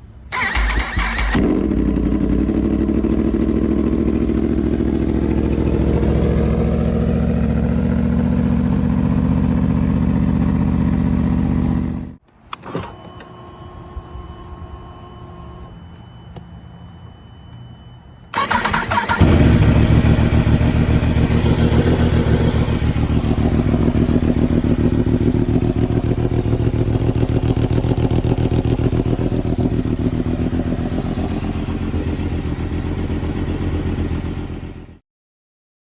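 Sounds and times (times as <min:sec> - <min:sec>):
starter motor cranking: 0:18.4 - 0:19.7.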